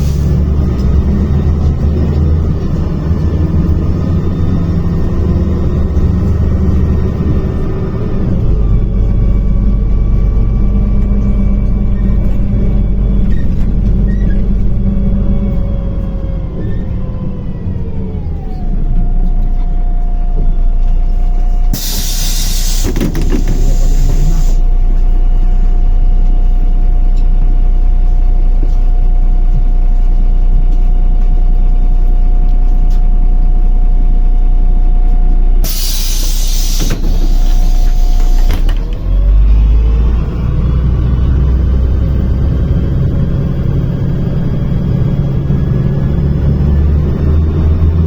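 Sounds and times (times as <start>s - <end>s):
bus drivetrain whine: 0.0s - 48.0s
compressed air hiss of doors: 21.8s - 24.6s, 35.6s - 38.8s.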